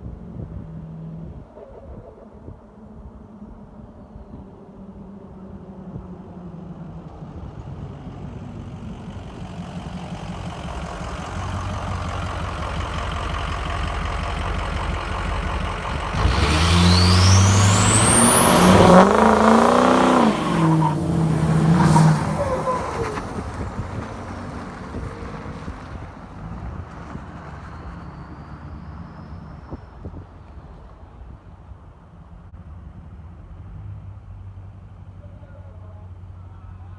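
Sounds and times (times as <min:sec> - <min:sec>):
pickup truck accelerating past: 0:06.0 - 0:30.7
rising turbo whistle: 0:16.2 - 0:23.2.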